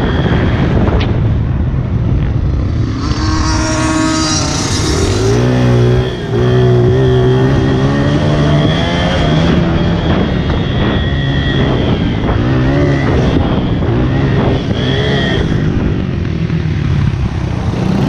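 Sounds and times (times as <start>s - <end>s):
motorbike engine revving: 1.8s - 9.8s.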